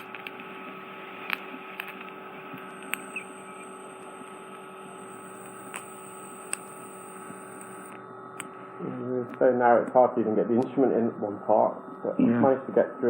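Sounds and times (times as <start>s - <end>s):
instrument clicks and crackles in ear: 0.0s - 8.6s
electrical hum: 0.0s - 13.0s
thin high whine: 0.0s - 13.0s.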